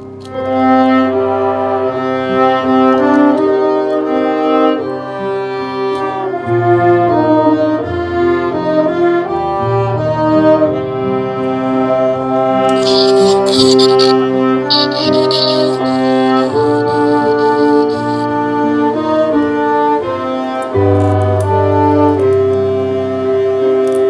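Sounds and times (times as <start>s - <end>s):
instrumental music: 11.4s - 24.0s.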